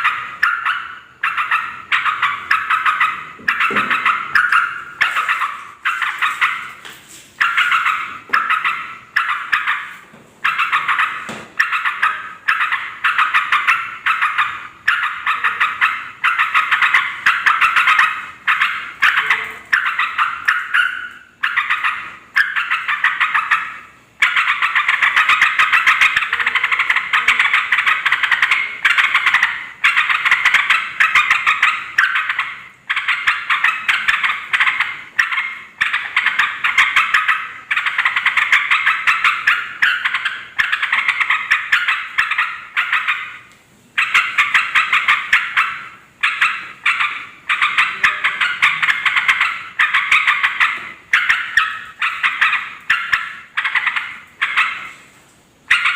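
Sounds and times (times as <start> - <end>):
bulbuls chattering: 0.0 - 55.1.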